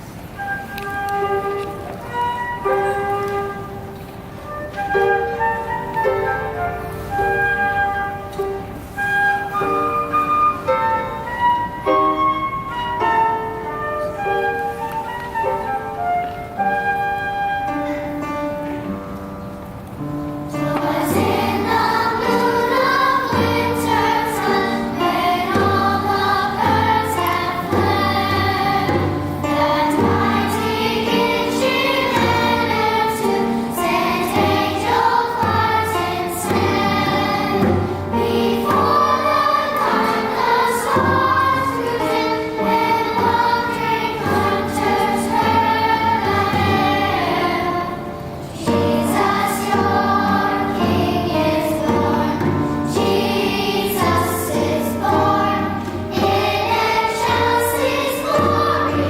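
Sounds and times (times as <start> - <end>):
choir singing: 20.5 - 59.0.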